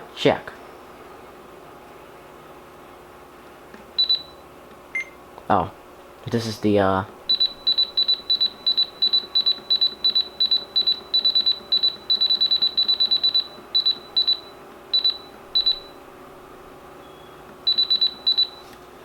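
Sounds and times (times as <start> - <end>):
short high-pitched beeps: 7.3 - 16.0, 17.7 - 18.6.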